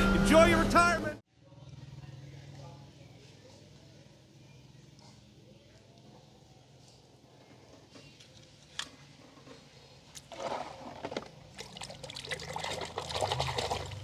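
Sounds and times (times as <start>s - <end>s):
water splashing and pouring: 10.2s - 14.0s.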